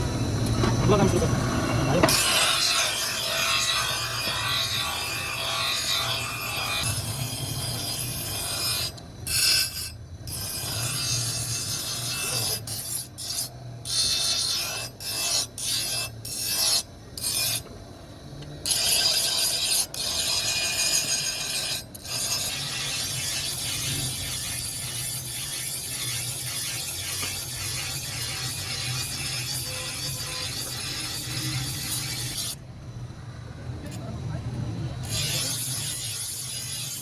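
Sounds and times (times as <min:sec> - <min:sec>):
low hum: 0:00.0 - 0:02.2.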